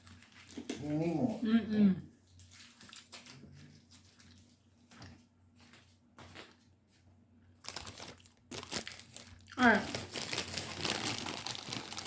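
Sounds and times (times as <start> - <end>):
chewing: 2.2 - 6.6.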